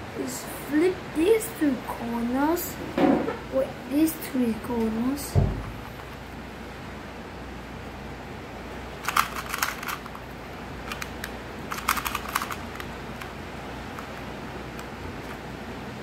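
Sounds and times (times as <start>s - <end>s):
plastic puzzle cube layers clicking: 9.0s - 15.5s.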